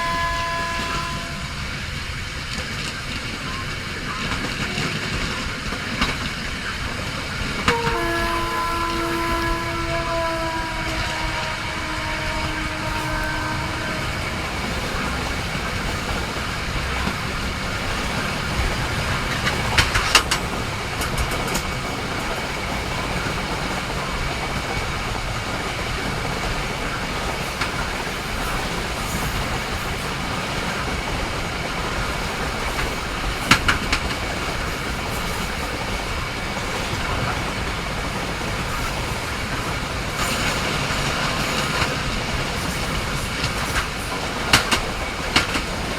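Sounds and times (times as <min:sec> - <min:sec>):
train horn: 0:00.0 - 0:01.9, 0:07.6 - 0:17.2
train wheel and rail noise: 0:00.0 - 0:45.9
wheels clacking over rail joints: 0:00.0 - 0:45.9.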